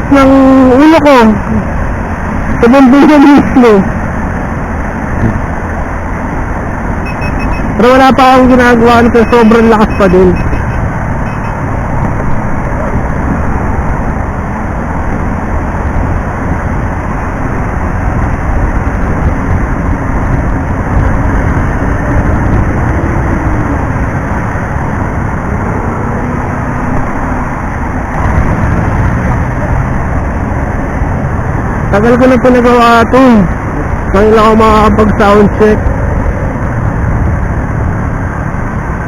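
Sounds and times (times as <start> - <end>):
engine and traffic rumble: 0.0 - 39.0
faint scooter engine tone: 7.0 - 11.7
wind noise on microphone: 10.0 - 31.9, 33.6 - 39.0.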